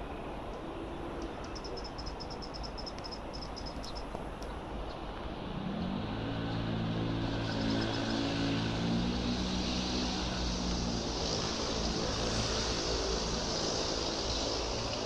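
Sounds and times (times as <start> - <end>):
low engine hum: 3.4 - 15.0
road or wind rushing: 3.6 - 15.0.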